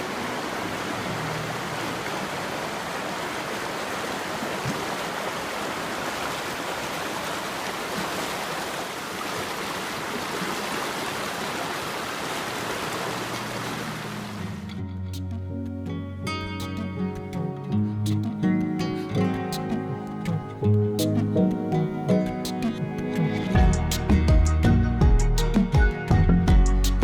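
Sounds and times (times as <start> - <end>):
stream water rushing: 0.0 - 14.9, 16.5 - 24.2.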